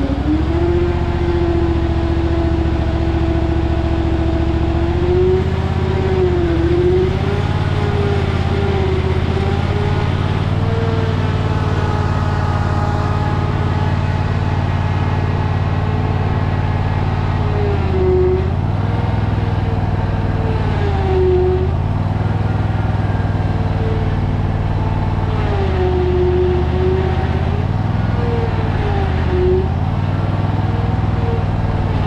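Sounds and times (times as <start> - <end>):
motor running: 0.0 - 32.0.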